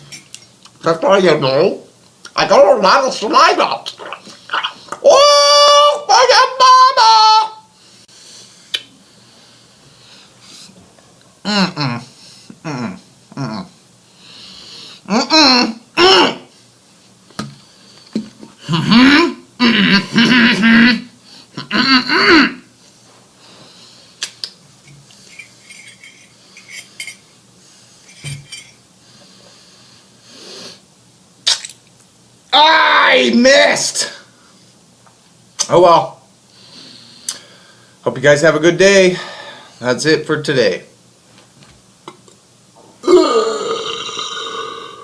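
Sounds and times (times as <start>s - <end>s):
faint breathing: 14.1s - 15.1s, 36.5s - 38.0s, 39.2s - 39.8s
person belching: 18.7s - 22.6s, 43.0s - 45.0s
loud belches: 43.0s - 45.0s.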